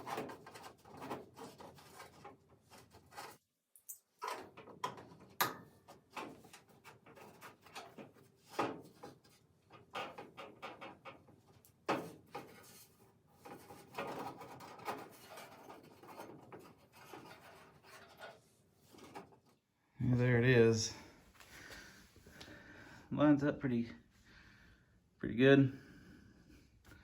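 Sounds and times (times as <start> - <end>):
metal scraping on metal: 11.9 - 19.5.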